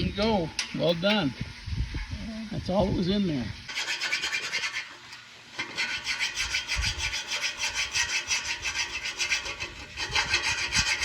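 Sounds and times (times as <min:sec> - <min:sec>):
rapid rasping on metal: 0:03.7 - 0:05.0, 0:05.6 - 0:11.0.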